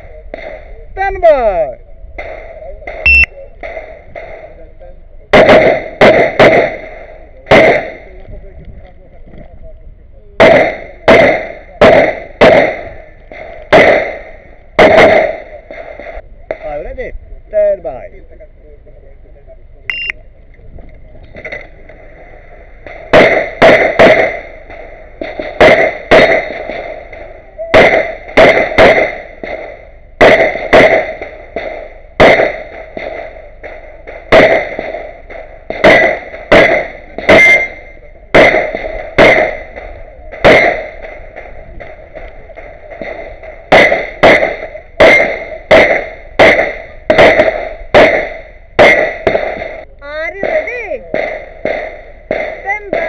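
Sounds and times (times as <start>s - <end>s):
pistol shots: 5.3s - 8.2s, 10.4s - 16.7s, 22.8s - 49.8s, 50.4s - 53.0s.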